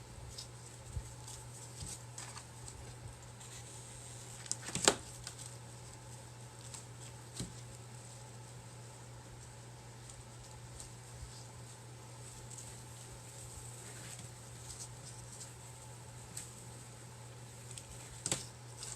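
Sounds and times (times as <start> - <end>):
steady low hum: 0.0 - 18.9
small clicks and rustles: 0.2 - 18.9.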